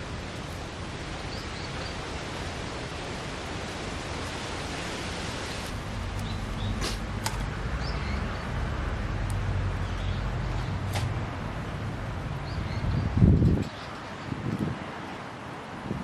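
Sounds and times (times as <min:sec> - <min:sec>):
wood fire crackling: 0:03.7 - 0:07.7, 0:08.4 - 0:12.4.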